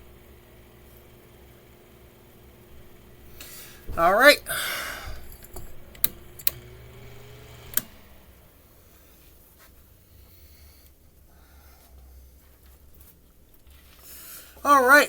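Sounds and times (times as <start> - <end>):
fan motor humming: 0.0 - 15.0
fan switch click: 5.0 - 8.1.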